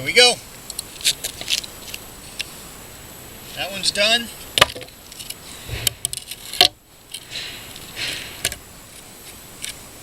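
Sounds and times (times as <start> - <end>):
low thump: 5.7 - 6.1.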